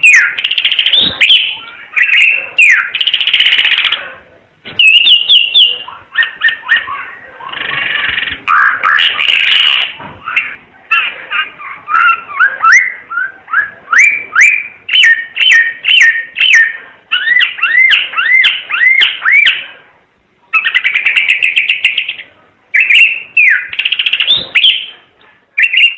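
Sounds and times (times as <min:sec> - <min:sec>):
bird whistled notes: 0:25.6 - 0:25.9.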